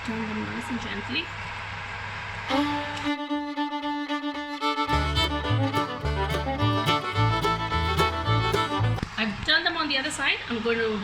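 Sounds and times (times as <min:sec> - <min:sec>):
fiddle music: 0:02.5 - 0:09.1
bass line: 0:04.5 - 0:09.0
steady beat: 0:04.8 - 0:09.0.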